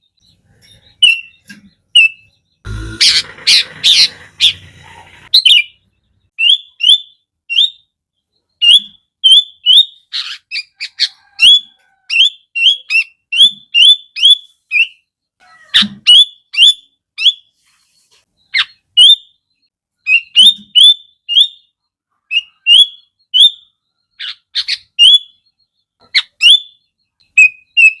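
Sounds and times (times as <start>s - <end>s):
bird whistled song: 0.0s - 2.4s, 5.3s - 5.8s, 6.4s - 7.9s, 8.5s - 15.2s, 16.1s - 17.5s, 18.4s - 28.0s
sharp downward-sweeping bird calls: 0.3s - 7.9s, 18.4s - 28.0s.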